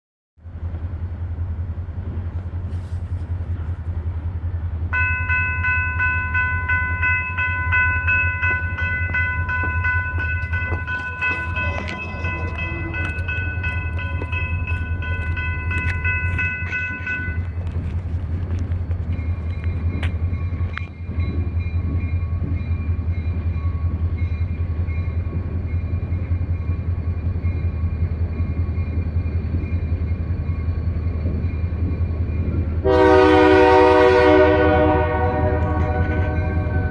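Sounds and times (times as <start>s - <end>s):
locomotive engine rumble: 0.4s - 36.9s
locomotive air horn: 32.8s - 36.9s.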